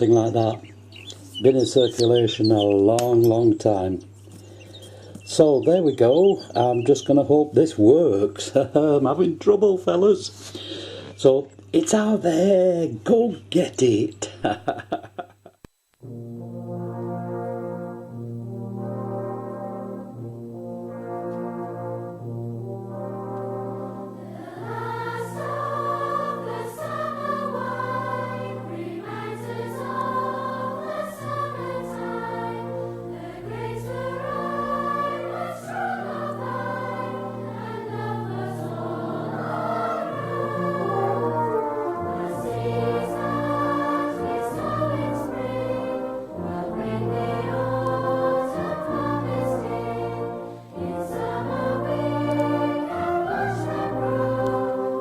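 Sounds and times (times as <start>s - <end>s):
choir singing: 5.3s - 7.4s, 22.7s - 55.0s.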